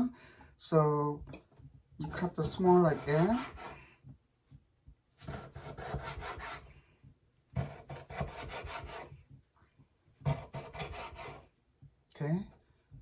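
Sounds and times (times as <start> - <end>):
knife slicing on cutting board: 2.0 - 3.8, 5.2 - 6.7.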